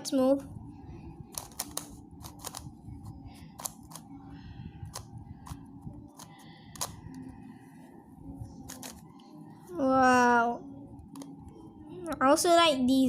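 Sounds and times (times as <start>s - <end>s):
plastic puzzle clicking: 1.3s - 2.6s, 3.5s - 4.1s, 4.9s - 7.0s, 8.6s - 9.0s.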